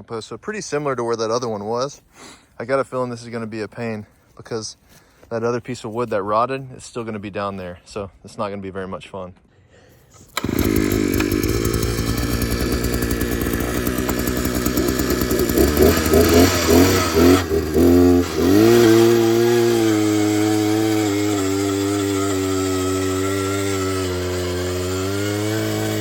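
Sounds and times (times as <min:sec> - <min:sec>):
small gasoline engine running: 0:10.3 - 0:26.0.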